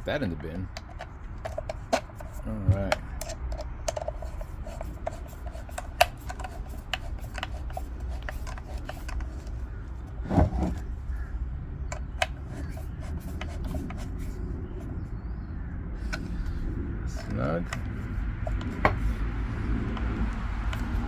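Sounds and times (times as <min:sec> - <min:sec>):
steady low hum: 0:00.0 - 0:21.0
tool clicking and scraping: 0:00.3 - 0:09.6, 0:11.9 - 0:14.4, 0:17.1 - 0:21.0.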